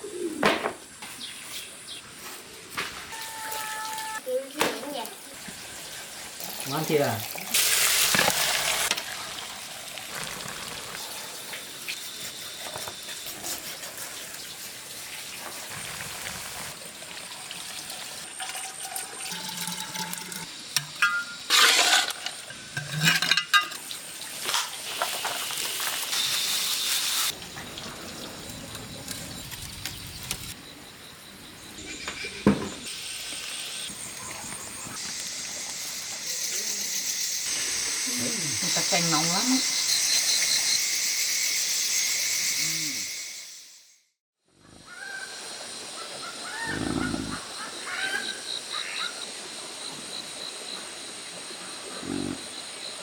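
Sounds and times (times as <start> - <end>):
water splashing and sloshing: 4.8 - 26.2.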